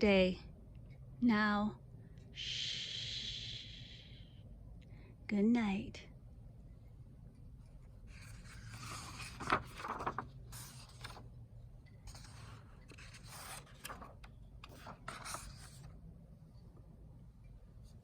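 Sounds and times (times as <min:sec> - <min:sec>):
rustling and scraping handling noise: 0:07.7 - 0:11.3, 0:11.9 - 0:16.0.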